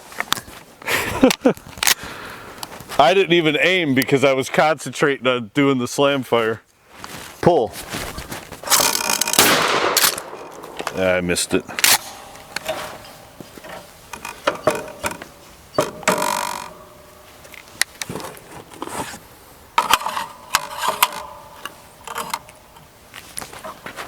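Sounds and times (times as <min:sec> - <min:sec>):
shotgun metallic clicks: 0:08.7 - 0:16.9.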